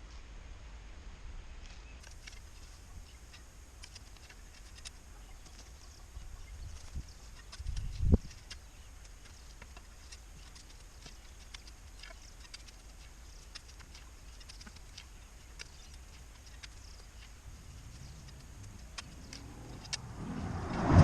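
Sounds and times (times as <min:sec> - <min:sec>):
steady low rumble: 0:16.0 - 0:21.0.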